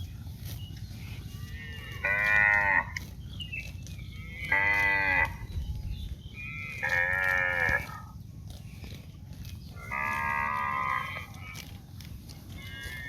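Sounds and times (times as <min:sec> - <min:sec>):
steady low rumble: 0:00.0 - 0:13.0
cattle mooing: 0:01.2 - 0:03.1, 0:04.1 - 0:05.5, 0:06.2 - 0:08.2, 0:09.8 - 0:11.8, 0:12.5 - 0:13.0.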